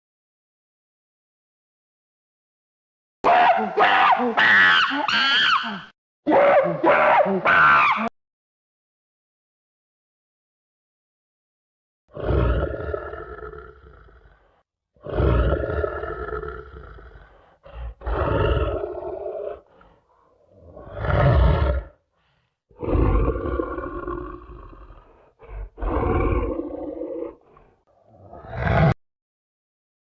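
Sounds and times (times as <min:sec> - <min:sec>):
big cat roaring: 0:12.1 - 0:22.0, 0:22.7 - 0:29.0.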